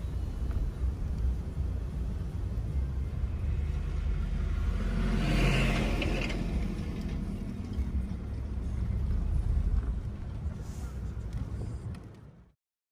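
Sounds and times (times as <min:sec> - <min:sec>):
low rumble: 0:00.0 - 0:12.0
vehicle driving past: 0:02.6 - 0:10.4.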